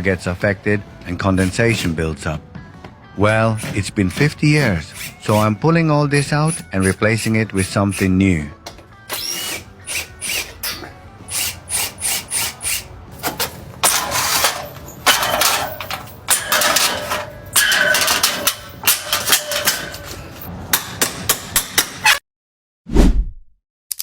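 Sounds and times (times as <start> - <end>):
metal scraping and rattling: 13.1 - 20.6
hammer strikes on metal: 15.1 - 22.1.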